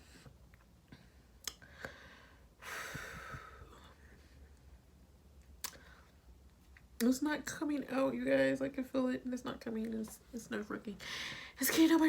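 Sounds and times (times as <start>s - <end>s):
soft mouth clicks: 1.4s - 2.0s, 5.6s - 5.8s
woman's breathy exhale: 1.7s - 3.7s.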